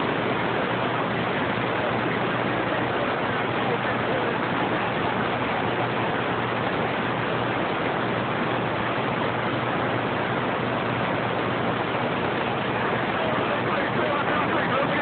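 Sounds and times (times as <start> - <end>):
radio static hiss: 10.7 - 15.0.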